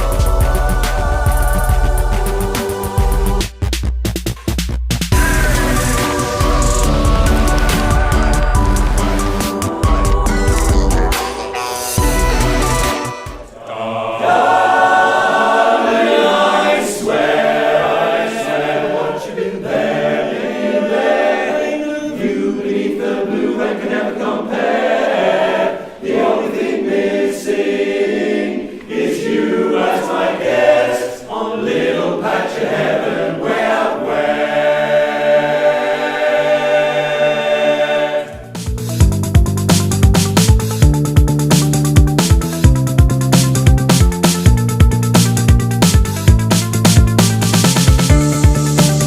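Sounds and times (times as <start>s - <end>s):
choir singing: 0.0s - 3.5s, 5.2s - 38.6s.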